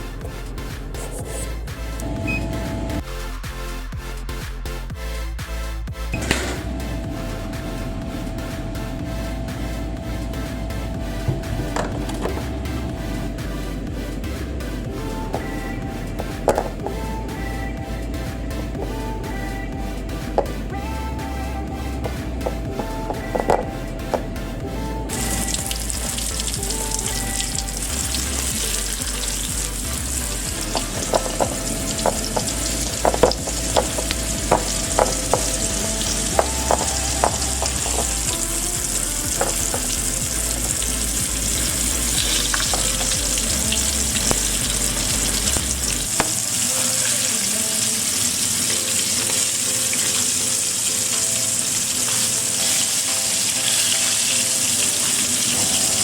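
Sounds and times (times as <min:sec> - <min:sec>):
fish sizzling in hot oil: 0:25.1 - 0:56.0.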